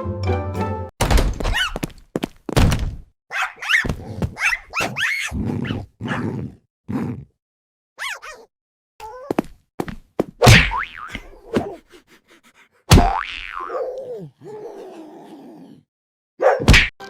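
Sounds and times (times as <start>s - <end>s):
cartoon thuds: 1.0s - 1.9s, 2.5s - 3.0s, 10.4s - 11.7s, 12.9s - 13.2s, 16.6s - 16.9s.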